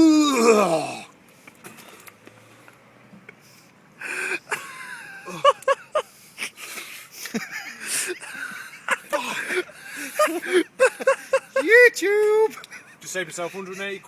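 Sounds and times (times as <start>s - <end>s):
man wheezing and breathing hard: 4.0s - 11.5s.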